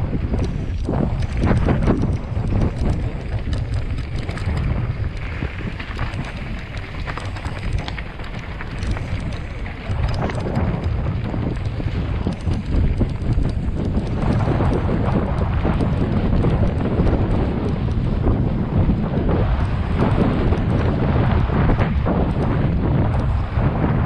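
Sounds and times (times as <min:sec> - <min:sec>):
bike clattering over bumps: 0:00.0 - 0:24.0
tyres rumbling on dirt trail: 0:00.0 - 0:24.0
wind rushing over microphone: 0:00.0 - 0:24.0.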